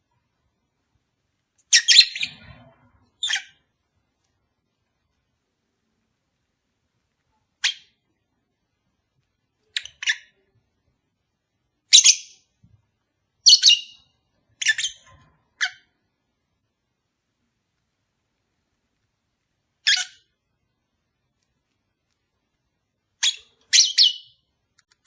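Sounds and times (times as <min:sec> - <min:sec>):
lovebirds chirping and squawking: 0:01.6 - 0:03.7, 0:07.6 - 0:08.0, 0:09.6 - 0:10.5, 0:11.9 - 0:12.5, 0:13.4 - 0:16.0, 0:19.8 - 0:20.4, 0:23.1 - 0:24.5.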